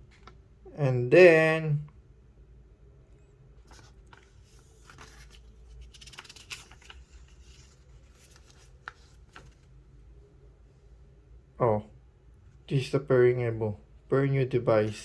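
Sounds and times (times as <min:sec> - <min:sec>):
headphones rustling: 0:03.6 - 0:09.8.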